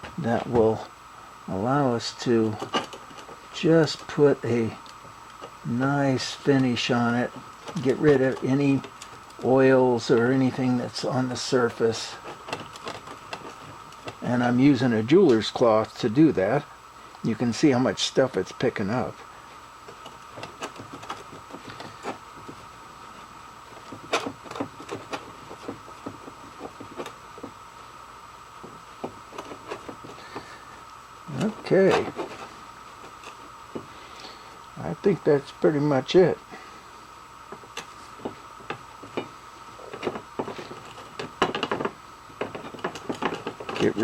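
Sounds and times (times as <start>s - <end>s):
steady hum: 0.0s - 44.0s
cloth rubbing metal plate: 19.8s - 34.5s.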